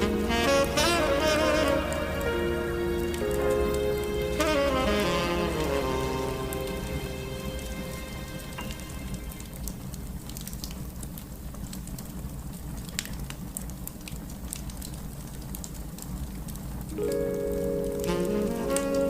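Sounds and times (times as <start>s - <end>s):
soft ambient music: 0.0s - 10.4s, 16.9s - 19.0s
raindrop ticks: 0.0s - 19.0s
steady rain: 0.0s - 19.0s.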